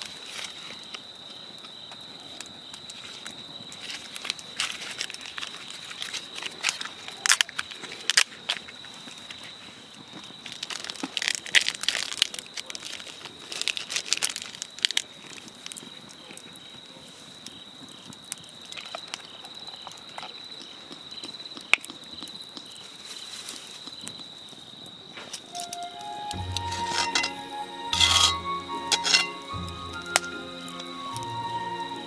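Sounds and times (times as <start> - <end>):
campfire crackling and popping: 17.4 - 32.0.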